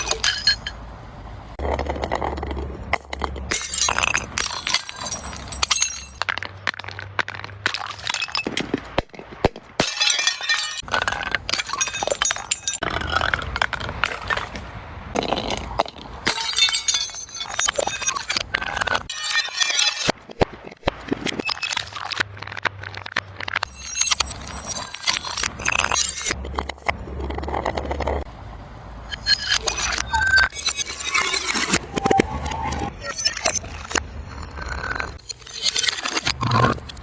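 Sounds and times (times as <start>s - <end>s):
glass shards clinking: 0.0s - 0.8s, 2.9s - 8.6s, 9.8s - 14.6s, 15.2s - 20.2s, 23.6s - 26.4s, 35.2s - 37.0s
glass bottles breaking: 3.0s - 14.4s, 15.2s - 20.5s, 21.1s - 26.4s.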